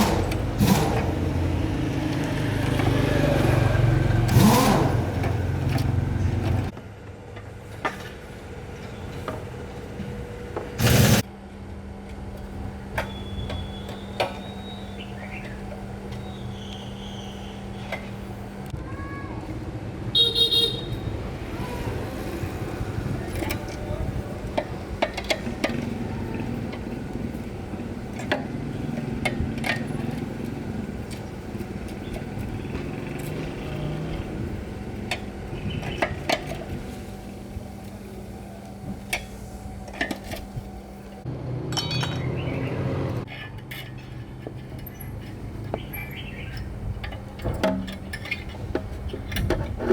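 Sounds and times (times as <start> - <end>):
street traffic: 0.0 - 49.9
vehicle horn honking: 20.1 - 21.2.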